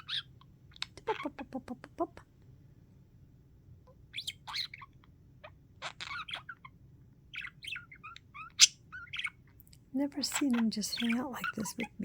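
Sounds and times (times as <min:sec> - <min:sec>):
budgerigar squeak: 0:00.0 - 0:01.3, 0:04.1 - 0:05.0, 0:05.8 - 0:06.7, 0:07.3 - 0:09.4, 0:10.3 - 0:12.0
budgerigar chattering: 0:00.0 - 0:01.7, 0:04.1 - 0:06.7, 0:07.3 - 0:09.4, 0:10.2 - 0:12.0.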